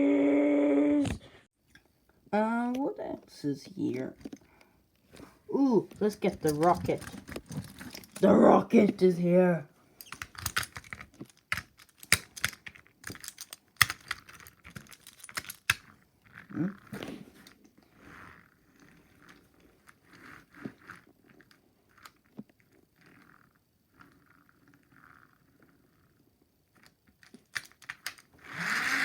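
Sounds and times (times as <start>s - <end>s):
scraping and rubbing: 5.1s - 9.2s, 10.0s - 22.1s
toy train pieces clicking: 5.6s - 9.3s, 10.0s - 16.9s, 18.1s - 26.1s, 26.8s - 29.0s.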